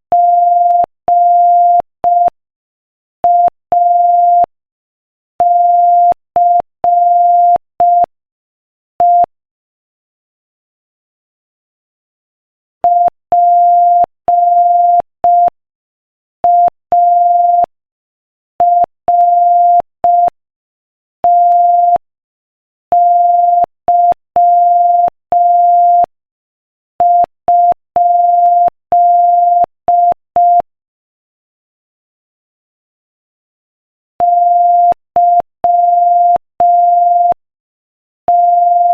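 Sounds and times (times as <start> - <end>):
morse code beeps: 0.1 - 2.3, 3.3 - 4.5, 5.4 - 8.1, 12.9 - 15.5, 16.5 - 17.7, 18.6 - 20.4, 21.3 - 22.0, 23.0 - 26.1, 27.0 - 30.6, 34.2 - 37.4, 38.3 - 38.9.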